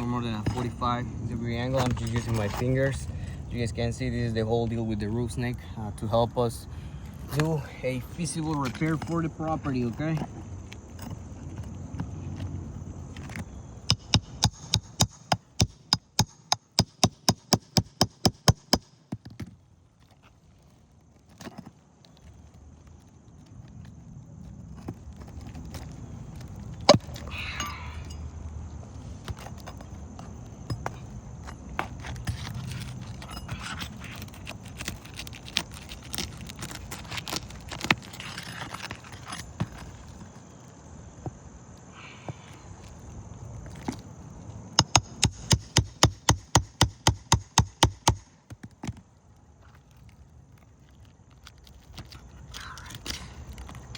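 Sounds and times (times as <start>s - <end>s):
scraping against gritty shingles: 0.0s - 53.9s
sharp metal taps: 13.9s - 18.9s, 44.8s - 48.2s.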